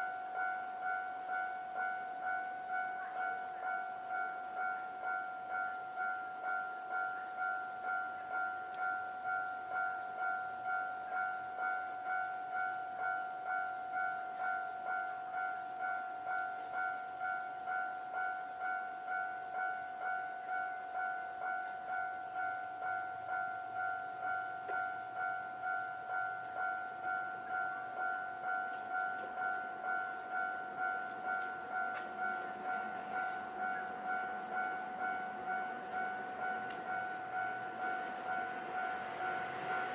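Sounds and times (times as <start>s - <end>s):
level-crossing electronic bell ringing: 0.0s - 39.9s.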